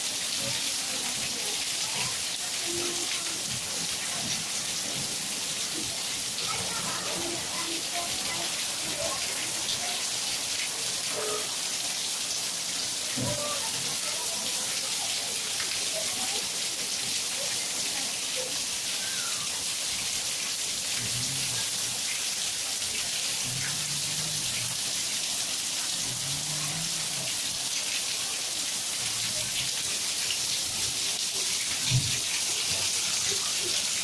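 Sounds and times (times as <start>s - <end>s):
faint low voices: 0.0s - 34.0s
steady rain falling: 0.0s - 34.0s.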